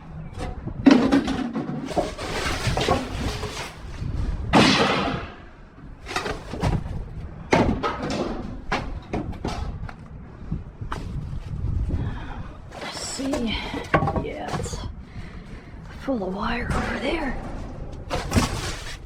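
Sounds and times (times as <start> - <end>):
scrap clattering and scraping: 0.3 - 4.2, 6.0 - 10.1, 10.9 - 19.0.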